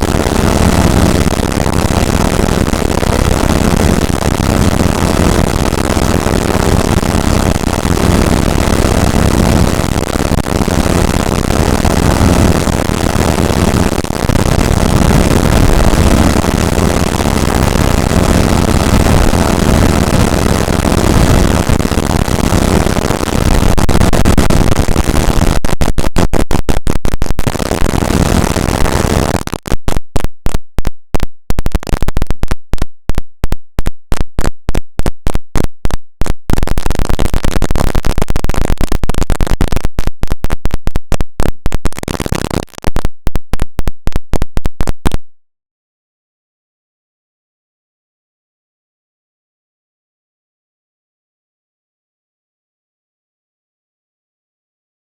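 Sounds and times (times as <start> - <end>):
harsh synthesizer noise: 0.0 - 30.0, 36.5 - 39.9, 41.9 - 43.0.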